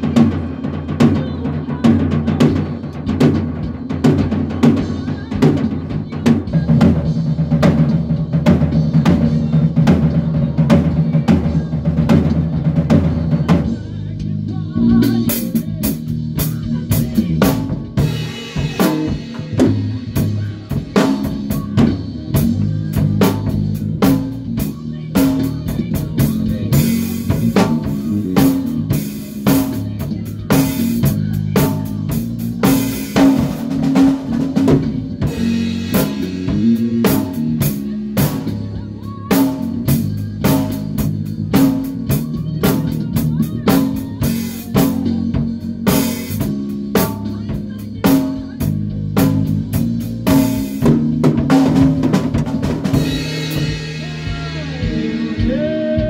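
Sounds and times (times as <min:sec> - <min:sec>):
bass guitar lines: 0:00.0 - 0:56.0
drum kit beat: 0:00.0 - 0:56.0.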